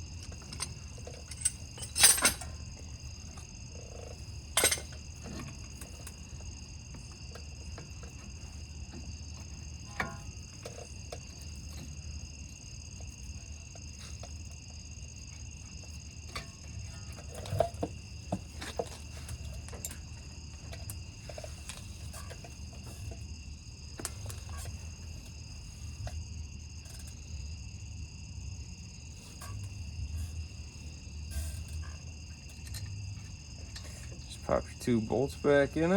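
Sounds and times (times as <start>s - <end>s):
metal tools clinking: 0.1s - 8.7s, 15.9s - 23.2s.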